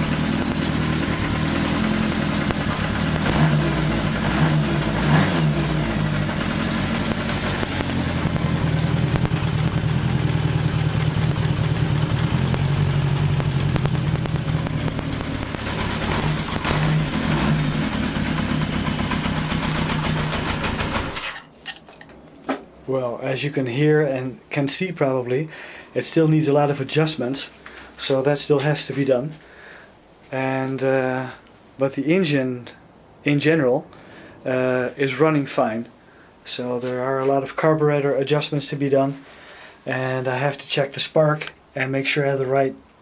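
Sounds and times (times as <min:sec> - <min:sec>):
motorcycle engine revving and running: 0:00.0 - 0:21.4.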